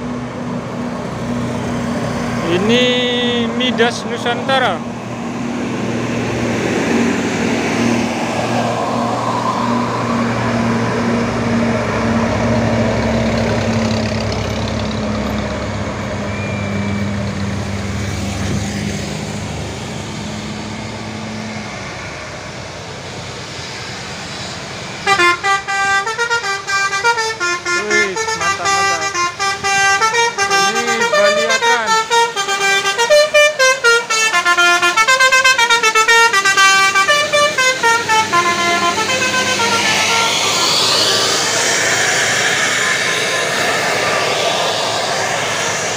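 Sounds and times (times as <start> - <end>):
bus diesel engine running: 0.0 - 45.9
musical multi-tone bus horn: 25.0 - 41.2.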